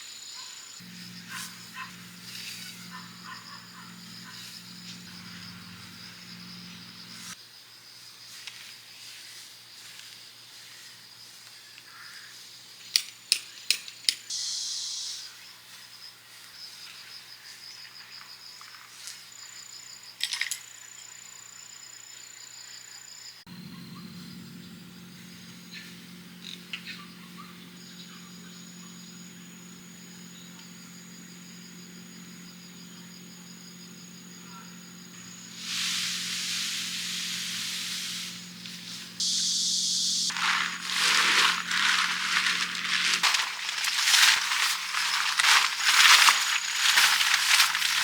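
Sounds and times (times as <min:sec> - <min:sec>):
faint high hiss of outdoor ambience: 0:00.0 - 0:17.8, 0:19.0 - 0:48.0
insects trilling: 0:00.0 - 0:48.0
low steady hum: 0:00.8 - 0:07.4, 0:23.5 - 0:48.0.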